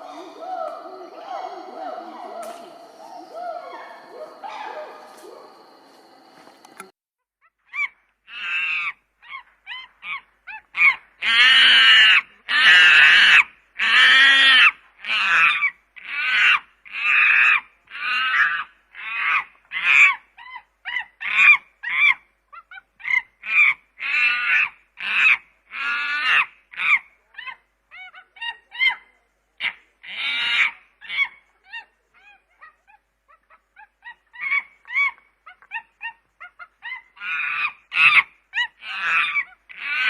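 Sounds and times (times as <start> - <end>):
chimpanzee calling: 0.0 - 5.9, 20.9 - 40.0.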